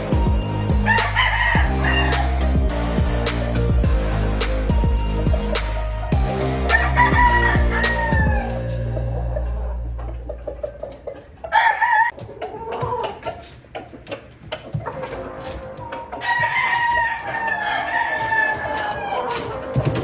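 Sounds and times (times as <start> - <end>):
roosters crowing: 0.0 - 4.4, 6.1 - 8.7, 11.5 - 13.2, 16.2 - 19.7
chickens clucking: 7.2 - 20.0.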